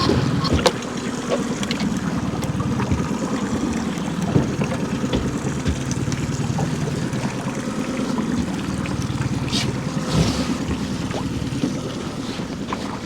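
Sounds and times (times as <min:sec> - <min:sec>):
boat motor running: 0:00.0 - 0:13.0
faint knocks: 0:04.3 - 0:06.5.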